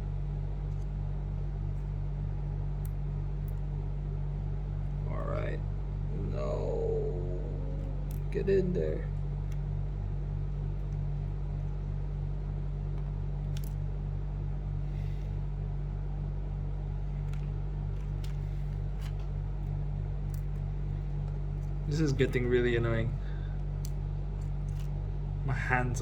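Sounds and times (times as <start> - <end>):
low pulsing machine hum: 0.0 - 26.0
small parts clicking: 2.8 - 3.7, 7.8 - 8.4, 13.4 - 13.8, 17.2 - 22.9, 23.6 - 25.0.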